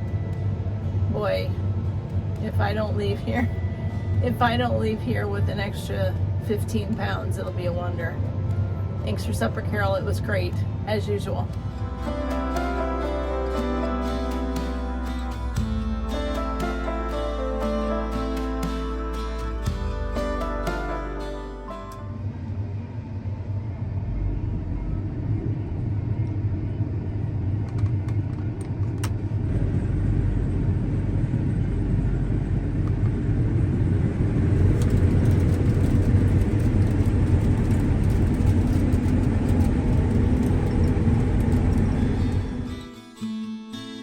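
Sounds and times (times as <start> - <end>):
motor vehicle rumbling: 0.0 - 43.0.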